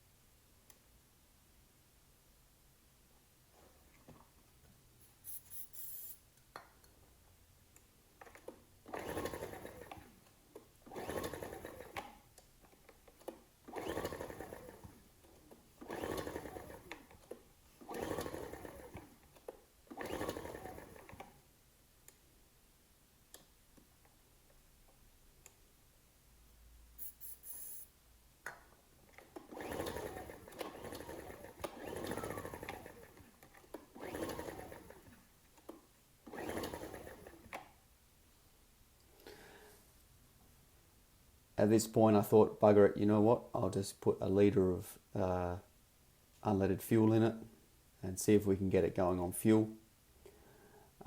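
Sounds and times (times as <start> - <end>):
generator engine cranking: 13.7 - 14.9, 29.5 - 33.2, 34.0 - 35.1.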